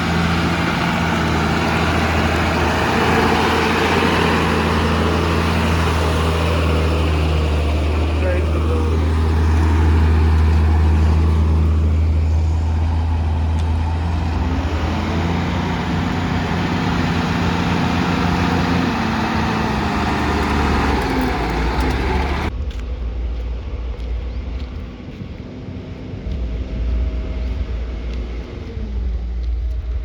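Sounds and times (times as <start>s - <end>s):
diesel engine revving: 0.0s - 22.6s.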